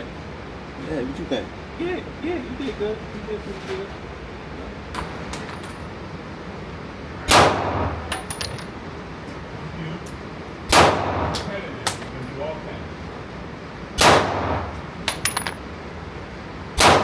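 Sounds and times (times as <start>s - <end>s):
gunshots with ringing tail: 7.3s - 8.1s, 10.7s - 11.4s, 14.0s - 14.7s, 16.8s - 17.0s.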